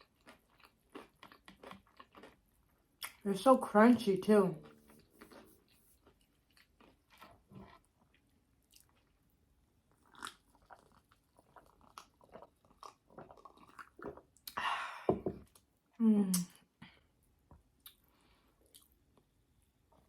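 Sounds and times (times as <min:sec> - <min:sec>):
person chewing crunchy chips: 0:00.0 - 0:03.3, 0:04.6 - 0:09.2, 0:09.9 - 0:14.5.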